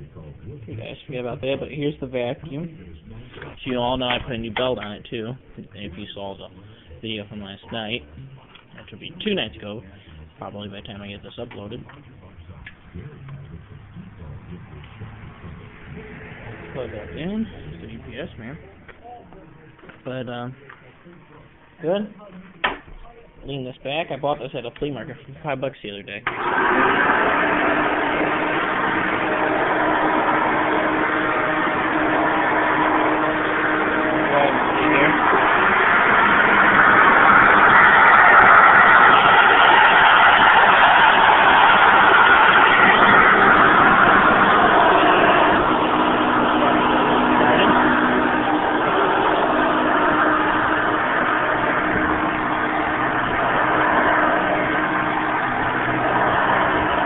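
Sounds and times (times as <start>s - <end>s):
vacuum cleaner motor hum: 26.3s - 57.0s.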